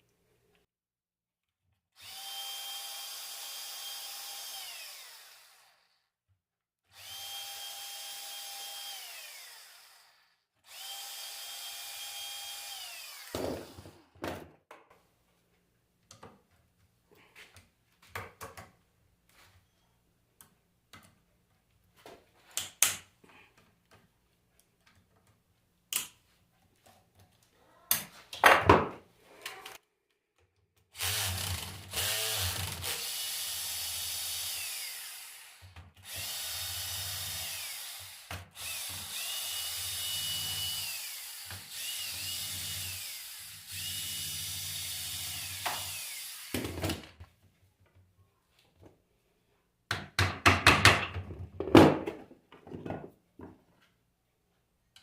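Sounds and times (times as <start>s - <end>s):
electric drill motor whine: 2.0s - 6.0s, 6.9s - 14.0s, 31.0s - 46.7s.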